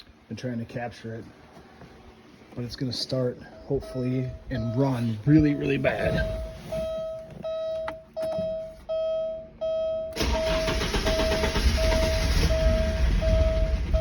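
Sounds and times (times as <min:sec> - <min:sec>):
warning chime beeping: 0:03.4 - 0:14.0
car engine running unevenly: 0:10.2 - 0:14.0.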